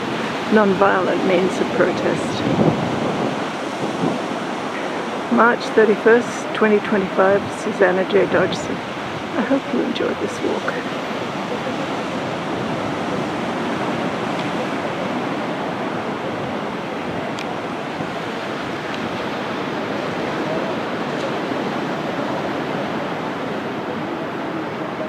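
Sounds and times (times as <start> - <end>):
ocean surf breaking on beach: 0.0 - 25.0.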